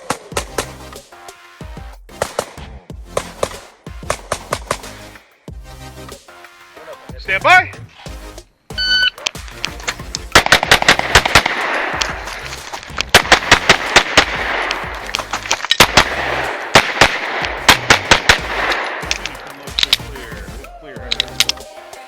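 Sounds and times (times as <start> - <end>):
background music with low beat: 0.0 - 22.0
pistol shots: 2.2 - 2.6, 9.3 - 12.4, 13.1 - 20.1
shot timer beep: 8.7 - 9.2.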